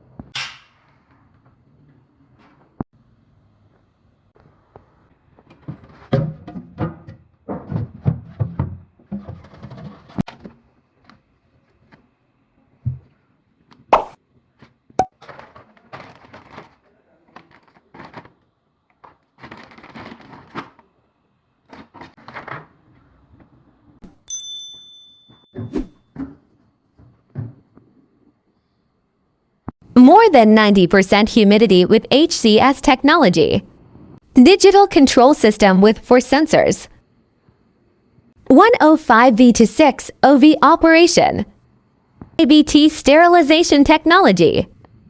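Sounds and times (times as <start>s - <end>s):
packaging rustling: 15.2s - 21.0s.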